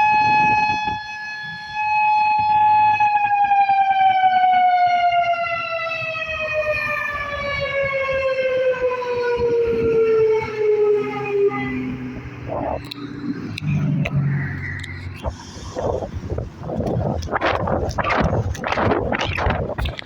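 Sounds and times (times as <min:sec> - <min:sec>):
warning siren winding down: 0:00.0 - 0:19.7.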